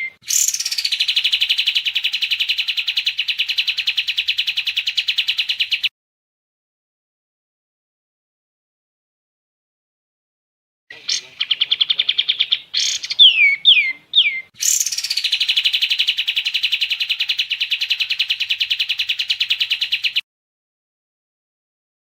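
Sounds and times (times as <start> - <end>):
songbird trilling and whistling: 0.0 - 5.9, 10.9 - 20.2.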